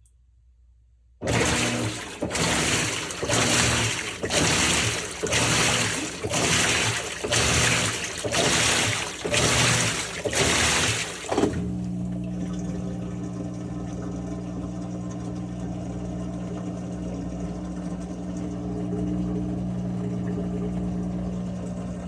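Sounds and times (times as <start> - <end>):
water rushing and sloshing: 1.2 - 13.4
low motor hum: 1.2 - 22.0.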